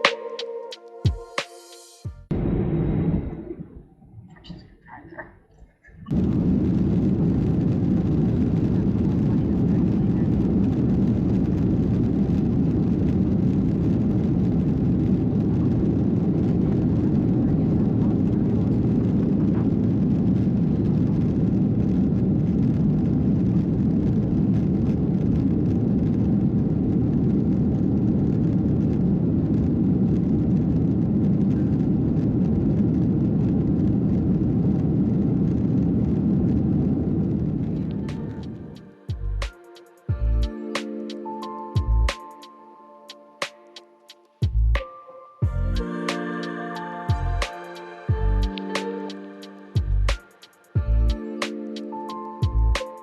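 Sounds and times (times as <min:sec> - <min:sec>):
airliner cabin jet engine rumble: 0:06.0 - 0:39.5.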